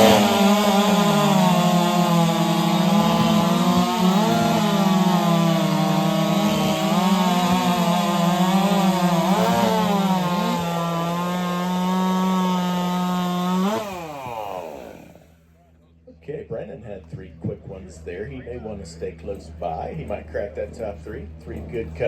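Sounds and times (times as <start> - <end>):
chainsaw cutting through log: 0.0 - 15.4.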